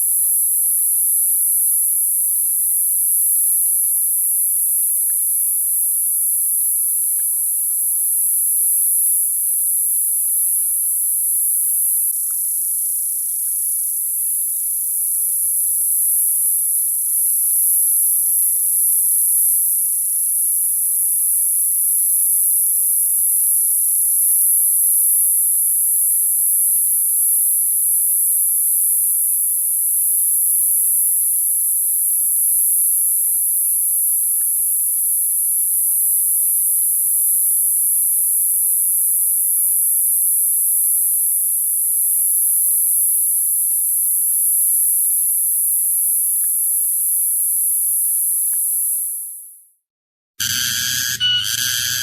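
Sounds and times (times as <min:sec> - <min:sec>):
cicadas buzzing: 0:05.5 - 0:22.6, 0:50.4 - 0:52.0.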